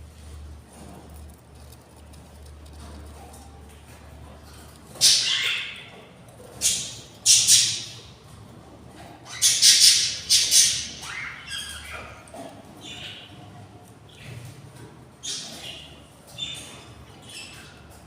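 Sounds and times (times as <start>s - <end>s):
budgies squawking: 5.0s - 6.0s, 6.6s - 8.1s, 9.2s - 13.3s.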